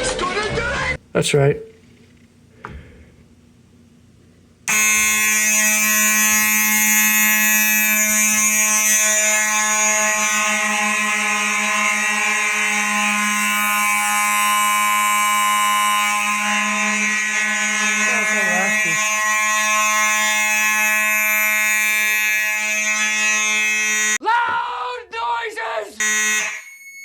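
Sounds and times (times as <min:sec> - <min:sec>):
fire alarm horn: 0:04.7 - 0:24.2, 0:26.0 - 0:27.0.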